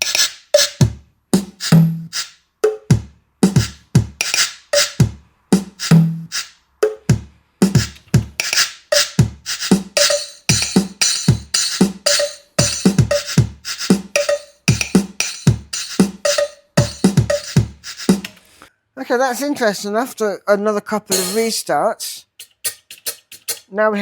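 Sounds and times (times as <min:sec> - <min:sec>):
drum machine beat: 0:00.0 - 0:18.4, 0:21.1 - 0:21.5, 0:22.3 - 0:23.7
kick drum: 0:00.8 - 0:01.6, 0:02.9 - 0:04.2, 0:05.0 - 0:06.1, 0:07.1 - 0:08.4, 0:09.2 - 0:09.5, 0:10.5 - 0:11.6, 0:12.6 - 0:13.7, 0:14.7 - 0:17.8
snappy drum hits: 0:00.8 - 0:18.4.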